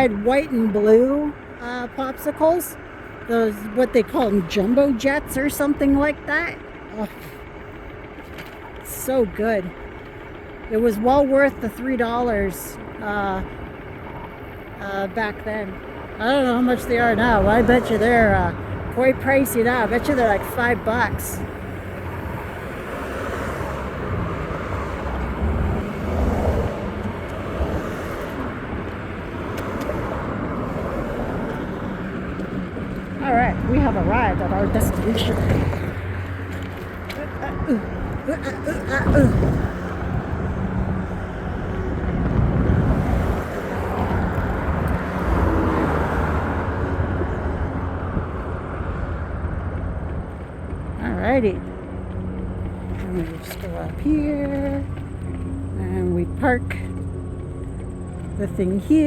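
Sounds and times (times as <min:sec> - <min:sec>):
wheels rumbling on road: 0:00.0 - 0:59.0
wind on microphone: 0:37.3 - 0:51.0.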